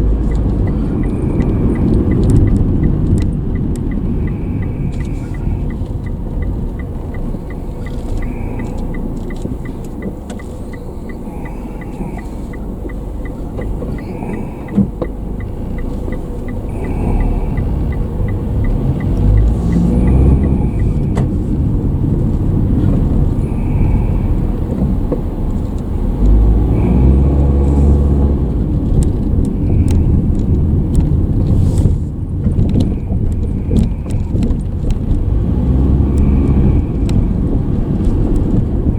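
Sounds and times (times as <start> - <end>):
car engine and road rumble: 0.0 - 38.9
light ticking: 0.0 - 38.9.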